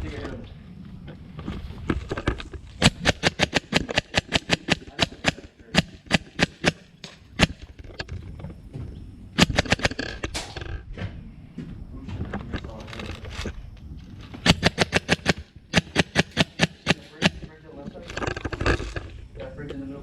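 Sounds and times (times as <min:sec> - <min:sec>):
airsoft gun shots: 0:02.8 - 0:07.7, 0:09.4 - 0:10.6, 0:14.4 - 0:17.5.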